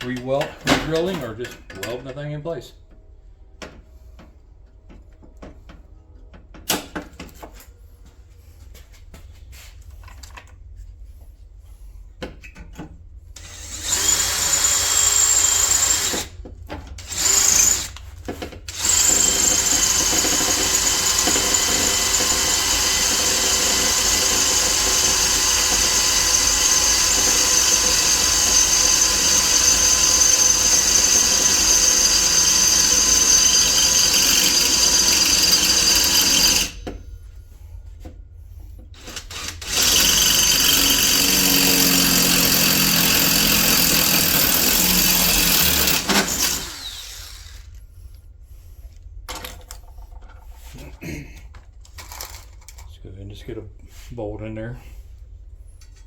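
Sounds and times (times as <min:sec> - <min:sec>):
power drill whining through metal: 0:13.4 - 0:16.4, 0:17.0 - 0:18.1, 0:18.7 - 0:37.0, 0:39.0 - 0:47.8.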